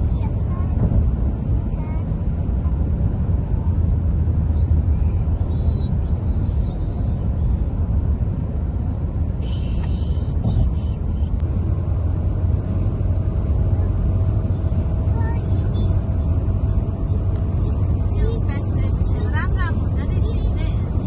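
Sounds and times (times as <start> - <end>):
car road and engine noise: 0.0 - 21.0.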